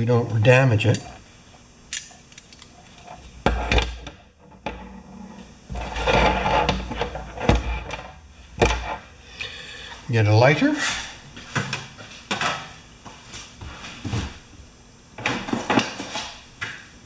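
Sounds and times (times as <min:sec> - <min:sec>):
tools clicking and knocking: 0:01.9 - 0:02.7
metal parts rubbing and rattling: 0:01.9 - 0:09.1.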